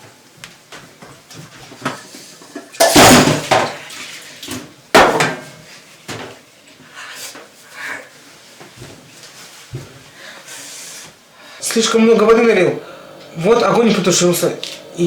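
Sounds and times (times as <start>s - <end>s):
pots and pans clattering: 1.8s - 6.4s.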